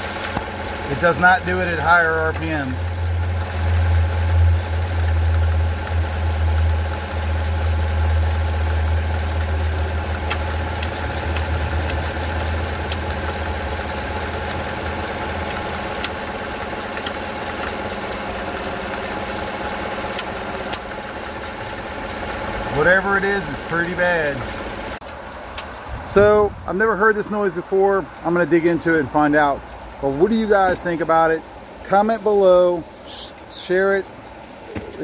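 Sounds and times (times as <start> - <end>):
engine idling with uneven pulsing: 0.0 - 35.0
sharp ticks: 8.6 - 13.8, 14.4 - 17.8.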